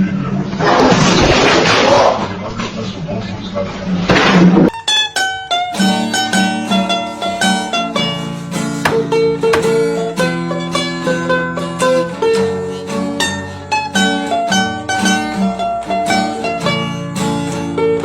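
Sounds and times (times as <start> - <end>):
fast plucked string instrumental: 4.7 - 18.0.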